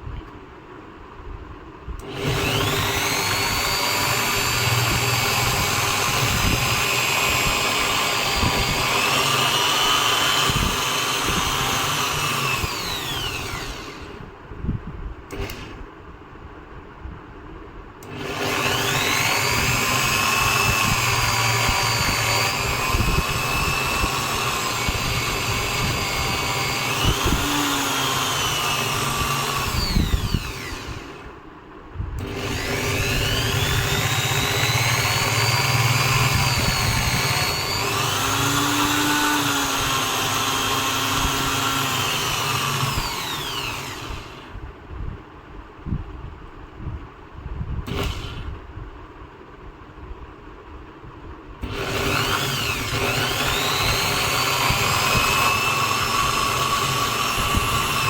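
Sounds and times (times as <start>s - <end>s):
drill press motor whine: 2.0s - 14.3s, 15.3s - 15.9s, 18.0s - 31.4s, 32.2s - 44.6s, 47.8s - 48.6s, 51.6s - 58.0s.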